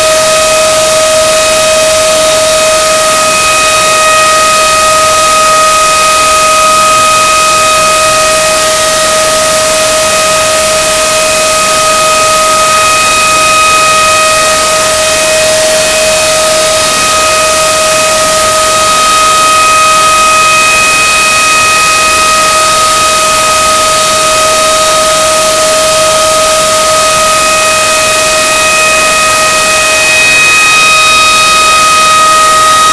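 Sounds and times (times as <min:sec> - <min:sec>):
distorted screaming chicken: 0:27.2 - 0:32.9.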